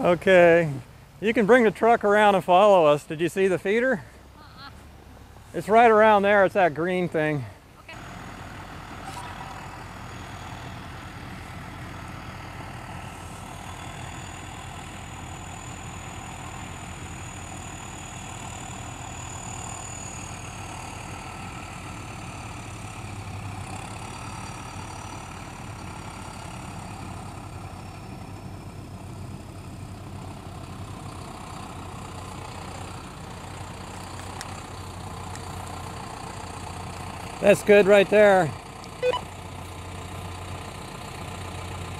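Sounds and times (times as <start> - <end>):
tractor diesel engine running: 0.0 - 41.9
faint high whine: 39.0 - 39.3.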